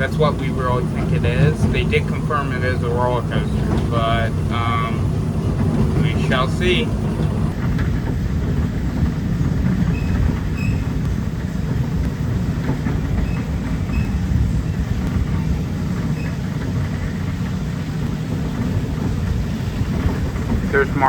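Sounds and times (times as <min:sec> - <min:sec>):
vehicle rumble: 0:00.0 - 0:21.0
faint high squeaks: 0:09.9 - 0:11.0.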